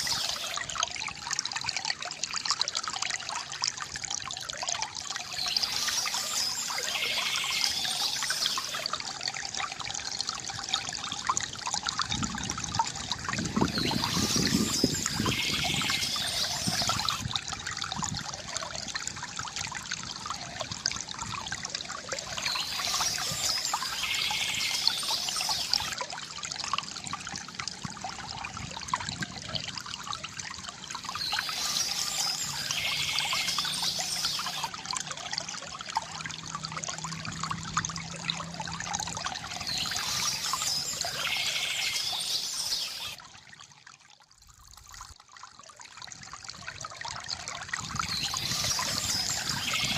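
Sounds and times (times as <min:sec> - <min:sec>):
river water gurgling: 0:00.0 - 0:49.9
birds chirping: 0:13.6 - 0:17.2, 0:22.4 - 0:26.0, 0:31.1 - 0:34.7, 0:39.4 - 0:43.2, 0:48.1 - 0:49.9.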